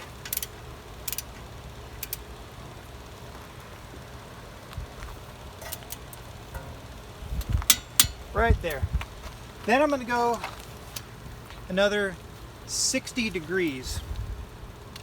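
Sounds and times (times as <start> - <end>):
torque wrench ticking: 0.0 - 2.5, 5.5 - 8.8
steady low hum: 0.0 - 15.0
torque wrench double click: 7.4 - 8.2.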